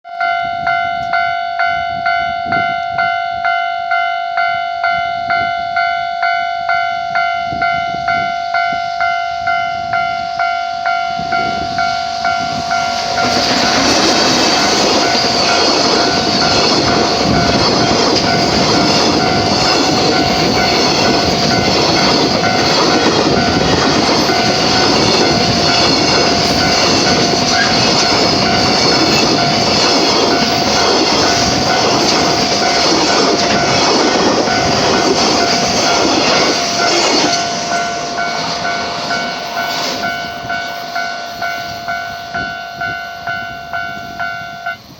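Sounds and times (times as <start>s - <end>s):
level crossing bell ringing: 0.1s - 44.9s
train wheels on rails: 0.2s - 44.9s.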